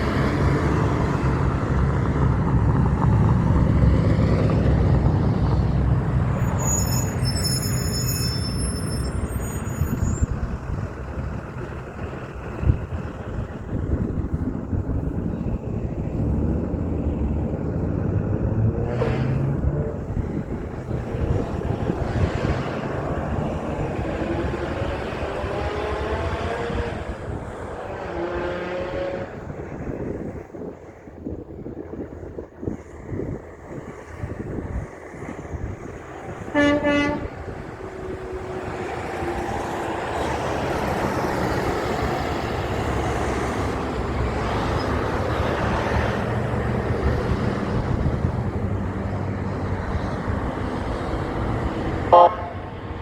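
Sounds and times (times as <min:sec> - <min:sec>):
heavy trucks driving past: 0:00.0 - 0:31.4, 0:32.0 - 0:53.0
high-pitched squeal: 0:06.3 - 0:10.5.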